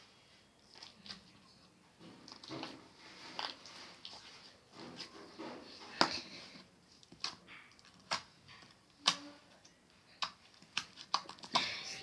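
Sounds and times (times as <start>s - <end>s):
slime squishing: 5.7s - 12.0s.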